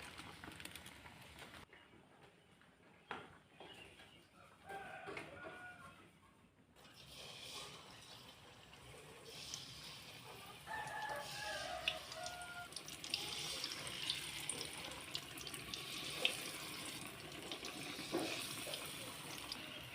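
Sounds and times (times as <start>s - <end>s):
rooster crowing: 4.6s - 6.0s, 10.6s - 12.8s.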